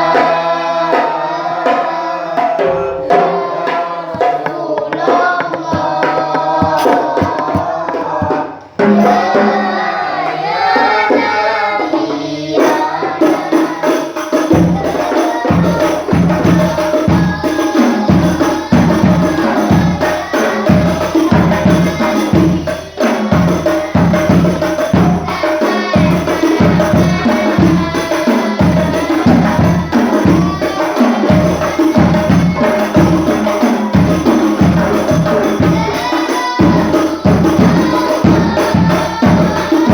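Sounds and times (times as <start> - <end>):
frame drums and tambourine: 0.0 - 39.9
voices singing: 0.0 - 39.9
deep bass drum beat: 4.2 - 9.0.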